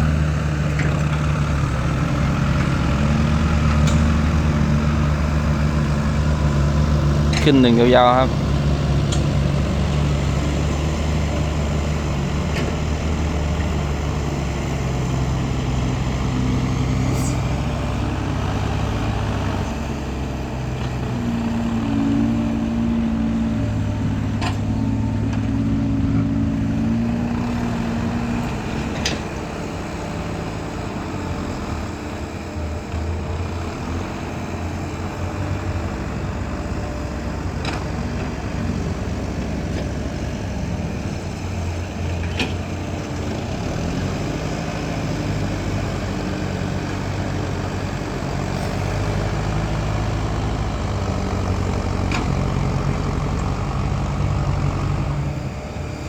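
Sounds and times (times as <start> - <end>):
diesel truck engine under load: 0.0 - 56.0.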